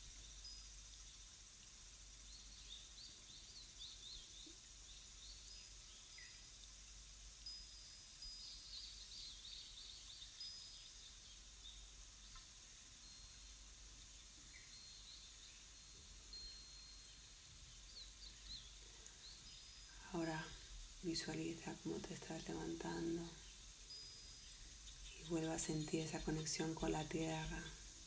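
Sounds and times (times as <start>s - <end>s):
soft steady hiss: 0.0s - 28.0s
birds chirping: 14.4s - 28.0s.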